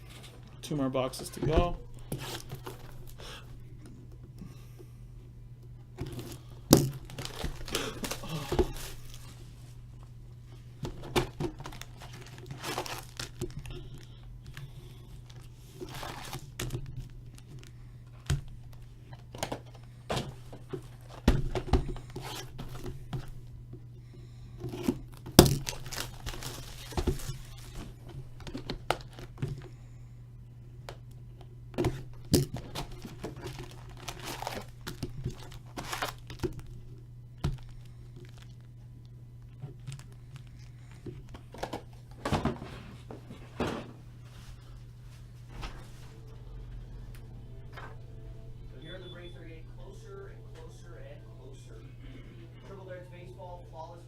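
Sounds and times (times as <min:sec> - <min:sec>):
low hum: 0:00.0 - 0:54.0
tearing and crinkling cardboard: 0:06.2 - 0:09.4, 0:11.5 - 0:17.7, 0:24.7 - 0:29.4, 0:32.5 - 0:36.8, 0:37.5 - 0:38.6.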